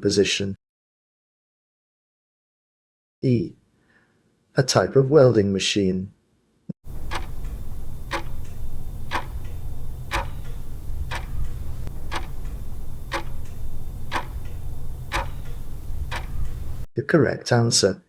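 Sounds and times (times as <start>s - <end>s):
clock ticking: 6.9s - 16.9s
steady low hum: 6.9s - 16.9s.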